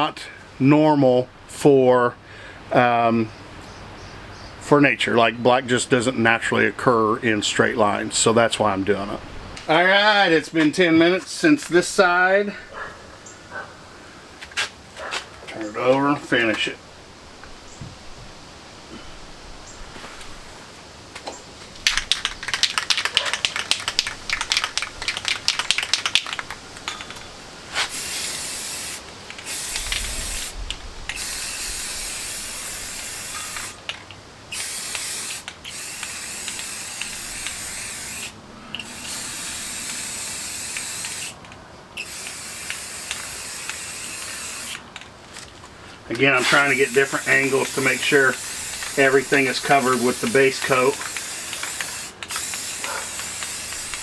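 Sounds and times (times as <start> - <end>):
spray paint hissing: 21.8 - 45.0, 46.2 - 54.0
spray can ball rattling: 21.8 - 45.4, 46.2 - 54.0.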